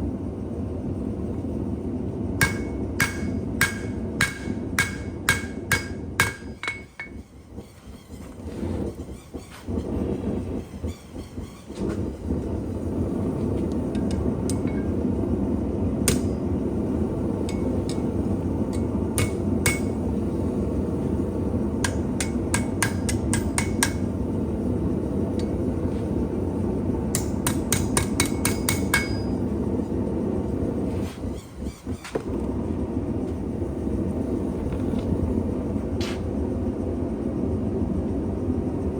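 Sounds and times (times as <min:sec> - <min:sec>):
forge running: 0:00.0 - 0:38.9
hammer striking steel on anvil: 0:02.4 - 0:07.2, 0:16.0 - 0:16.4, 0:17.5 - 0:18.1, 0:18.7 - 0:20.0, 0:21.8 - 0:24.1, 0:27.1 - 0:29.4.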